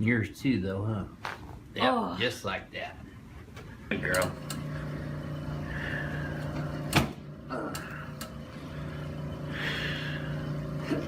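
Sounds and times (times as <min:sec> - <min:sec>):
steady low hum: 0:02.6 - 0:11.0.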